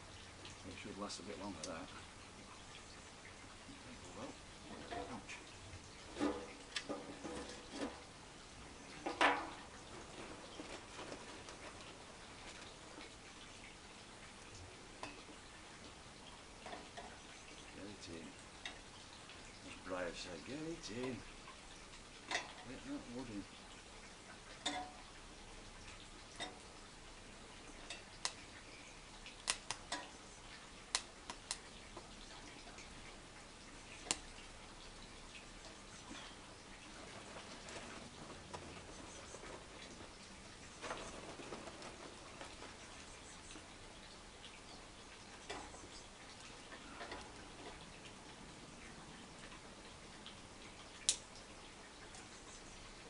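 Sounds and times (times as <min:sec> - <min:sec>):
twigs snapping in a stove: 0:06.1 - 0:08.0, 0:22.3 - 0:22.8, 0:27.8 - 0:28.6, 0:29.3 - 0:30.2, 0:30.9 - 0:31.7, 0:34.0 - 0:34.3, 0:51.0 - 0:51.3
dry twigs snapping: 0:29.4 - 0:30.0.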